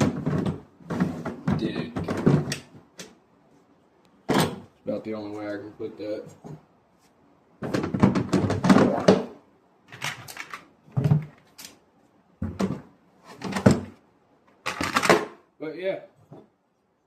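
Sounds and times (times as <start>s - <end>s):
plastic tool boxes knocking: 0.0s - 2.9s, 7.6s - 9.4s, 12.4s - 14.0s.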